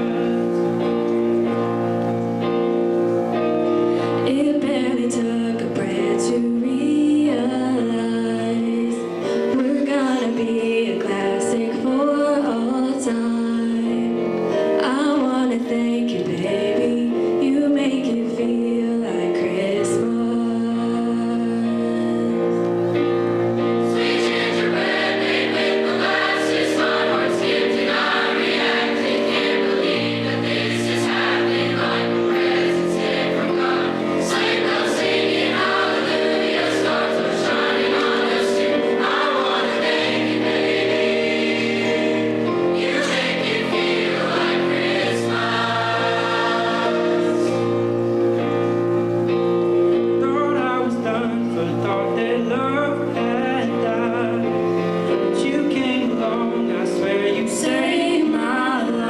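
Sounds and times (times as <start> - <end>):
instrumental accompaniment: 0.0 - 12.2, 21.2 - 58.7
choir singing: 23.6 - 48.9, 55.9 - 59.0.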